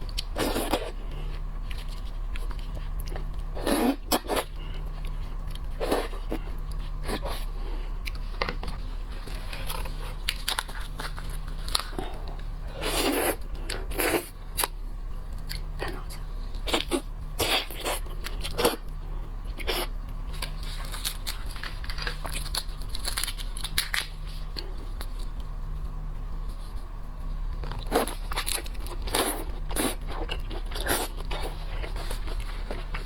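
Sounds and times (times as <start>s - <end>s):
steady low hum: 0.0s - 33.0s
shells cracking and tearing: 20.4s - 24.2s.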